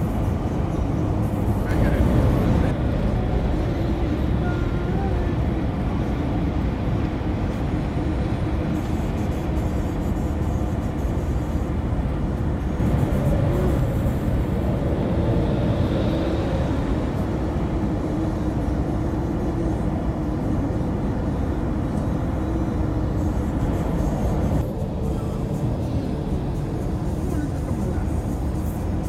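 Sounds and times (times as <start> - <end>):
low engine drone: 0.0 - 29.0
tyres rumbling on road: 0.0 - 29.0
wind noise: 0.0 - 29.0.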